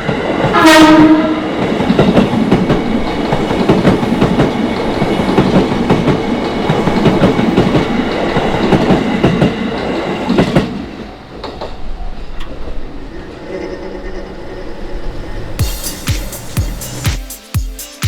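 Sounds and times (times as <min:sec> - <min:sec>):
train wheels clattering over rails: 0:00.0 - 0:12.8.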